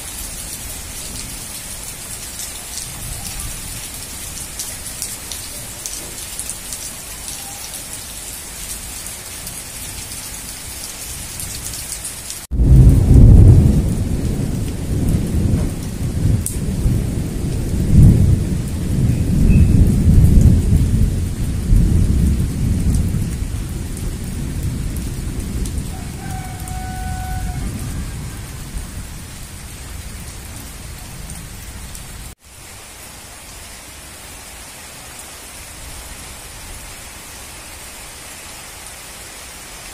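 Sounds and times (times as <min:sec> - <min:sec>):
heavy rain hissing: 0:00.0 - 0:39.9
thunder rumbling: 0:12.5 - 0:32.4.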